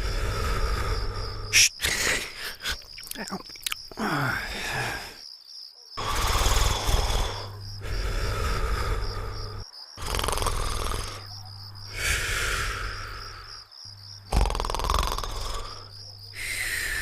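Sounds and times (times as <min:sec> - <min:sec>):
cartoon character snoring: 0:00.0 - 0:02.6, 0:06.0 - 0:13.5, 0:14.3 - 0:17.0.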